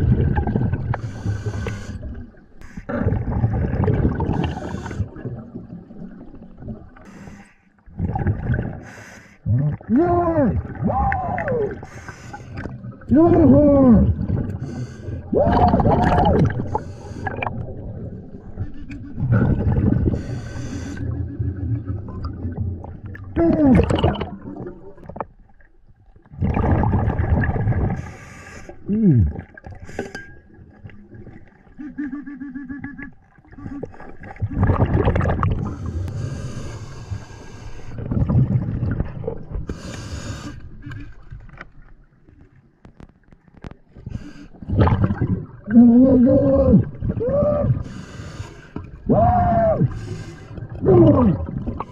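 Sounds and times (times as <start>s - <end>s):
water gurgling: 0.0s - 7.2s, 7.8s - 39.8s, 40.6s - 51.9s
snorkel breathing underwater: 0.9s - 5.3s, 8.6s - 9.9s, 11.7s - 12.8s, 14.1s - 17.9s, 18.5s - 21.3s, 27.7s - 30.4s, 35.5s - 38.3s, 39.5s - 40.9s, 44.0s - 45.6s, 46.5s - 51.9s
hissy snorkel breaths: 1.0s - 2.9s, 7.0s - 7.8s, 8.8s - 9.4s, 11.8s - 12.7s, 14.6s - 15.3s, 16.6s - 17.5s, 20.0s - 21.1s, 28.0s - 28.8s, 35.6s - 38.0s, 39.7s - 40.8s, 47.8s - 48.9s, 49.9s - 50.6s
muffled underwater cry: 9.7s - 12.0s, 13.1s - 14.2s, 15.3s - 16.5s, 31.7s - 34.0s, 45.7s - 48.0s, 49.0s - 50.2s, 50.8s - 51.6s.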